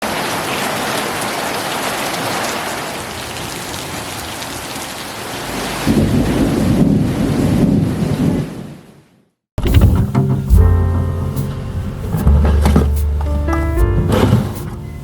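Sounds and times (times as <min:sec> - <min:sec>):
steady rain falling: 0:00.0 - 0:09.0
low rumble of thunder: 0:05.6 - 0:08.8.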